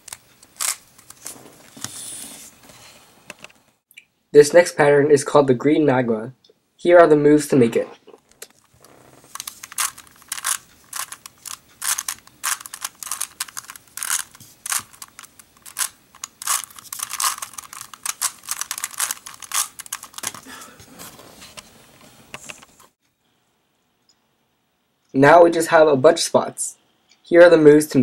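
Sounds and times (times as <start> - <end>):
plastic puzzle cube clicking: 0.0 - 1.2, 9.3 - 20.5.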